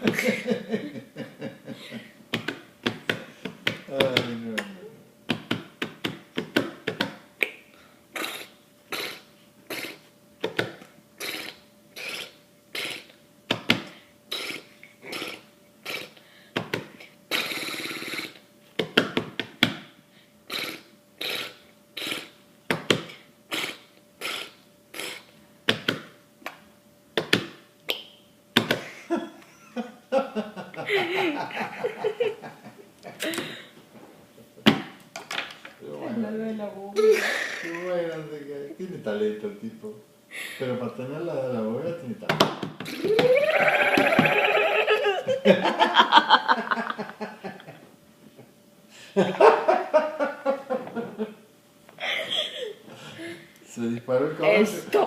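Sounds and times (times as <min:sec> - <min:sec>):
breathy mouth sound: 0:08.2 - 0:10.1, 0:11.2 - 0:13.2, 0:14.3 - 0:16.2, 0:20.5 - 0:22.4, 0:23.1 - 0:25.3.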